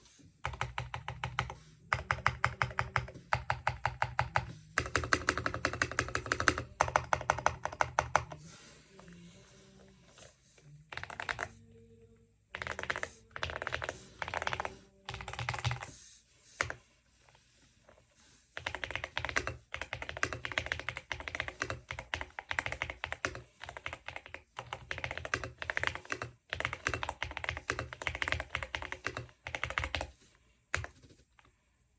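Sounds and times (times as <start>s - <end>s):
mechanical keyboard typing: 0.4s - 8.4s, 10.9s - 11.6s, 12.5s - 15.9s, 18.6s - 30.1s, 30.7s - 31.1s.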